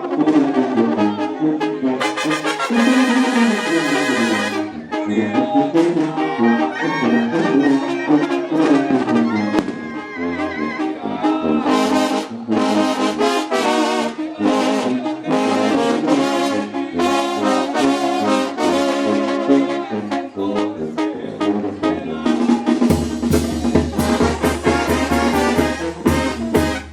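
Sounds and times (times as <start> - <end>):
brass band playing: 0.0 - 26.9.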